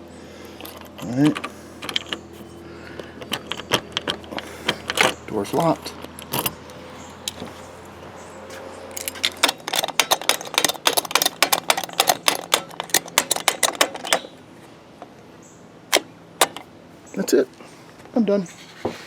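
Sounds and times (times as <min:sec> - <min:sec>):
keys jangling: 0:00.6 - 0:07.3, 0:08.9 - 0:14.3.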